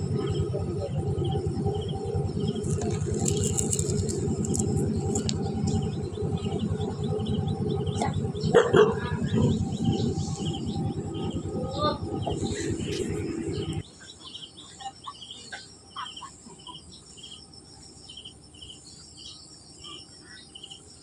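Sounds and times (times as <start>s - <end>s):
loud dense low noise: 0.0s - 13.8s
insect chirping: 0.2s - 8.0s, 9.2s - 21.0s.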